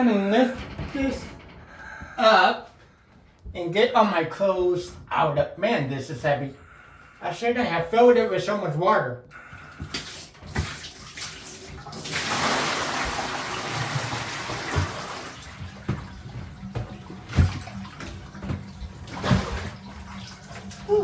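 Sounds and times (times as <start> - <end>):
water pouring into bathtub: 9.8 - 16.4, 17.1 - 21.0.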